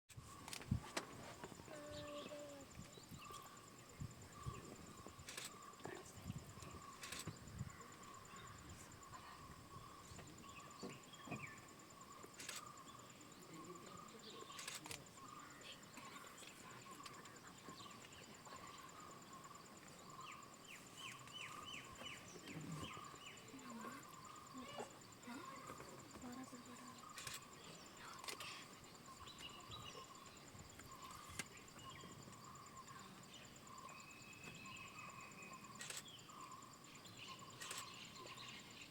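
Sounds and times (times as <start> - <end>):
bird calls: 0.2 - 38.9
high insect drone: 0.2 - 38.9
fast pulsing insect chirps: 18.0 - 38.9.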